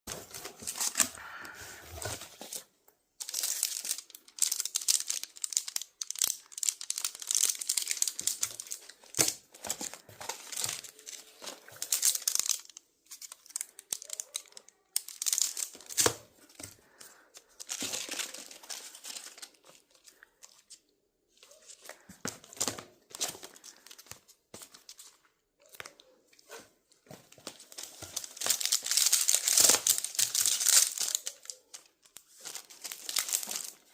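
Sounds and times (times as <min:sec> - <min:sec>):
packaging tearing and crinkling: 0:00.3 - 0:01.5, 0:03.2 - 0:16.2, 0:27.6 - 0:33.9.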